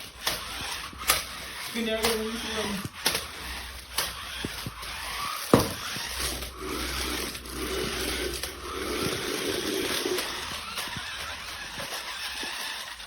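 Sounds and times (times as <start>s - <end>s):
toy car electric motors whirring: 0.0s - 13.0s
knocks: 5.5s - 5.9s.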